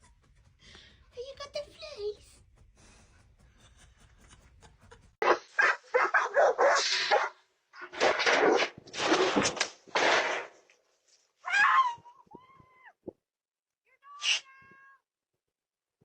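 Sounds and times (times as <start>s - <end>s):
dog barking: 5.2s - 7.4s
cat meowing: 11.5s - 13.0s, 13.9s - 15.0s.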